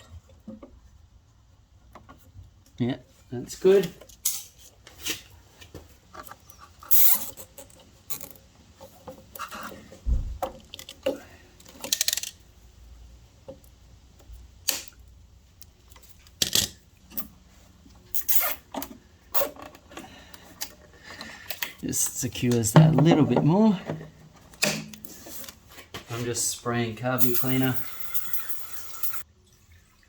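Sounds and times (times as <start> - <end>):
tools clicking and scraping: 6.2 - 8.4, 10.7 - 12.4, 18.1 - 21.8, 27.2 - 29.2.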